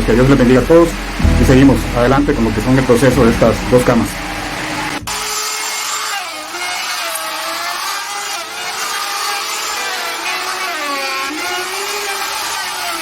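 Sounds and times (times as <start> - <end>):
power tool motor whine on wood: 5.4 - 13.0.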